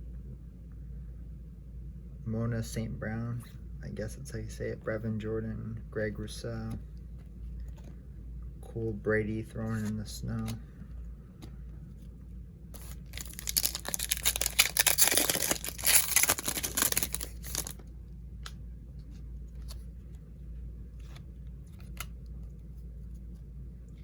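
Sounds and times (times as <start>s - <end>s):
plastic wrapper tearing and crinkling: 12.8s - 17.8s.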